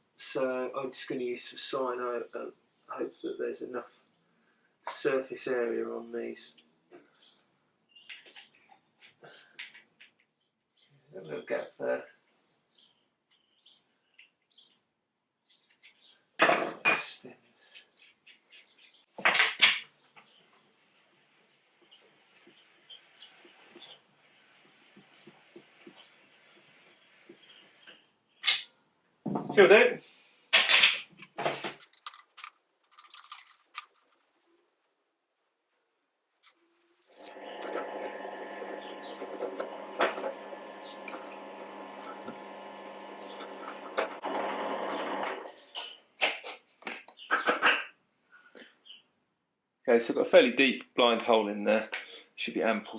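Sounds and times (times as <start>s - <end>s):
bird chirping: 6.6s - 11.0s, 12.2s - 16.2s, 17.6s - 24.0s, 24.6s - 29.0s
power drill drilling: 37.4s - 45.6s.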